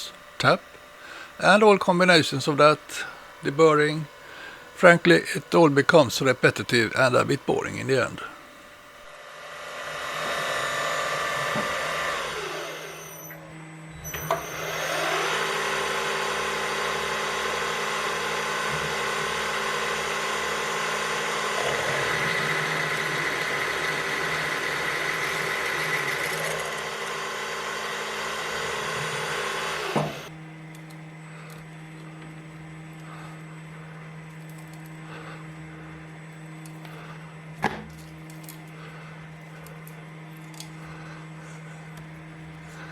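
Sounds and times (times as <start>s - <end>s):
machine motor hum: 0.0s - 42.9s
power tool cutting steel tubing: 9.2s - 13.4s, 14.1s - 30.9s.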